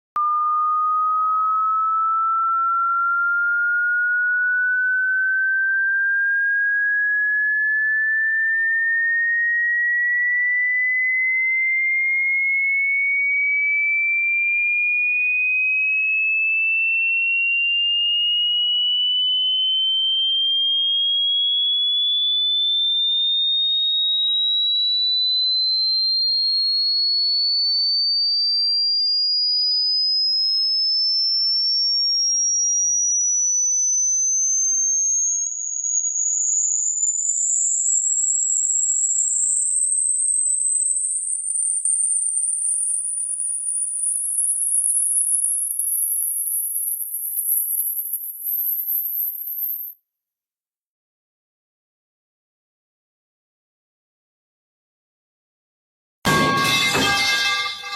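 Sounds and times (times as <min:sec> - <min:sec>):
rising electronic sine tone: 0:00.2 - 0:12.1, 0:17.6 - 0:27.2, 0:30.2 - 0:50.0.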